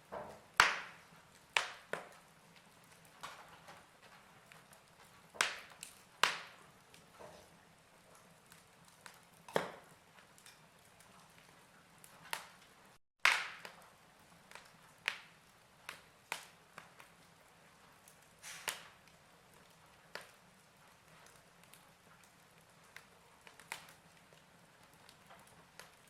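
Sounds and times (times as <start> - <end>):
fire crackling and popping: 0.0 - 26.0.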